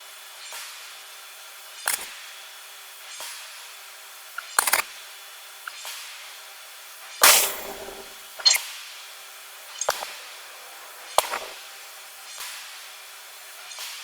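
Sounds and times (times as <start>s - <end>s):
hammer striking hot iron: 7.2s - 8.6s.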